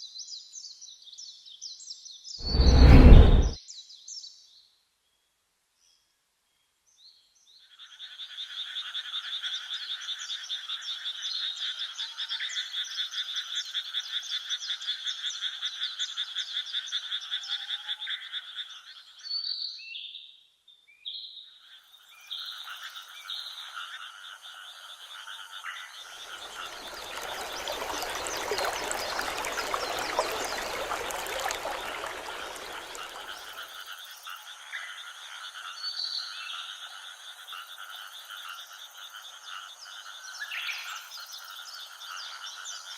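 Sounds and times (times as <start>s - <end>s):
broad rushing noise: 2.4s - 3.6s, 26.4s - 33.3s
frogs croaking in a trill: 21.6s - 42.9s.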